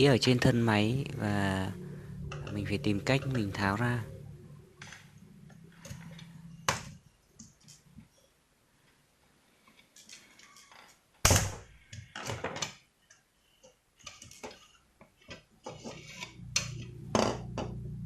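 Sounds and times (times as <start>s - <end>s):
low steady hum: 0.0s - 8.9s, 15.8s - 18.0s.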